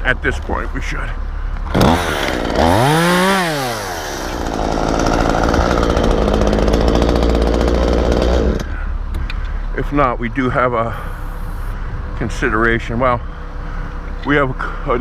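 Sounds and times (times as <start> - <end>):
chainsaw revving: 1.7 - 9.0.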